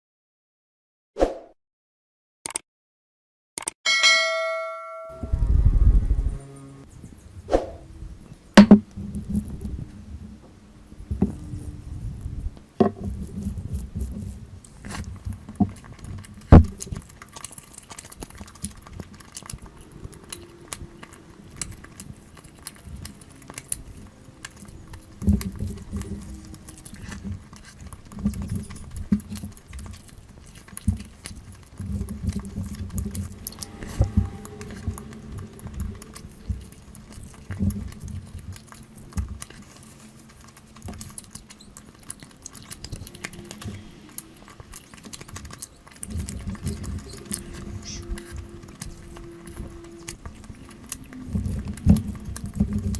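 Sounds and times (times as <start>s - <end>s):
person eating and chewing: 11.1s - 52.9s.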